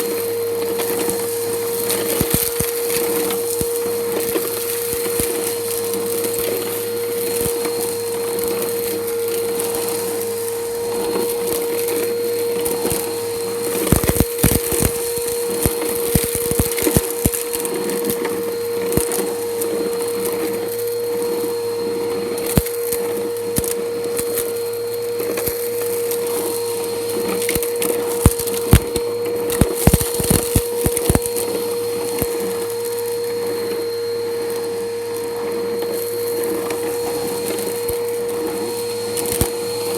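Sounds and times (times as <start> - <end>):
vacuum cleaner motor whine: 0.0 - 39.9
grit crackling through vacuum: 0.7 - 20.6, 25.2 - 33.9.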